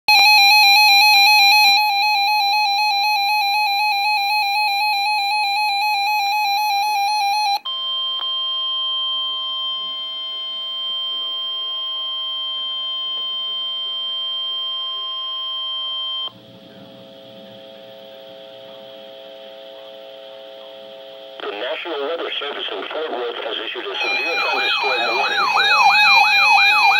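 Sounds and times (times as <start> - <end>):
faint radio hiss and hum: 8.2 - 26.9
steady high alert tone: 17.7 - 26.9
warbling electronic data tone: 23.3 - 26.9.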